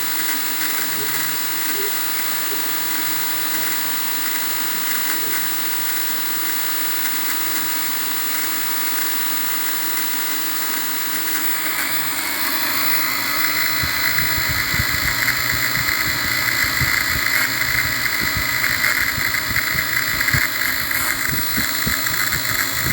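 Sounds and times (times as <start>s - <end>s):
drone motors whining: 11.0s - 22.9s
low thumps: 13.5s - 22.9s.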